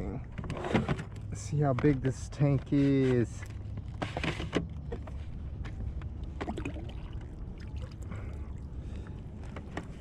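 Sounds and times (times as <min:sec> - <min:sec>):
water trickling and sloshing: 0:03.4 - 0:10.0.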